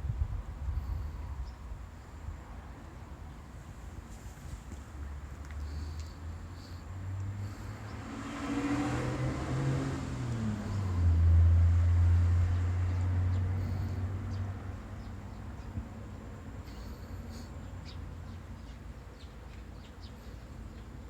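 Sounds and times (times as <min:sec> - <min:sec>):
motor vehicle passing by: 0:04.4 - 0:17.5.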